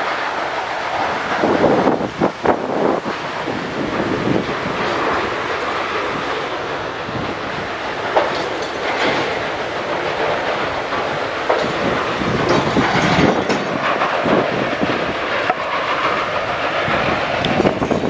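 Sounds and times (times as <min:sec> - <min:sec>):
sawmill machinery running: 0:00.0 - 0:18.0
clanks and knocks of lumber: 0:07.1 - 0:18.0.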